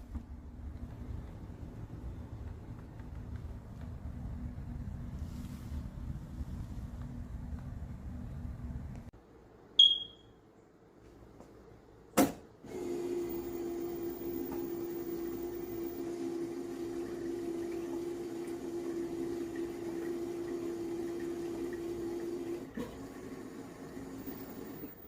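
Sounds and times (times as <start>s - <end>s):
drain pump humming: 12.7s - 25.0s.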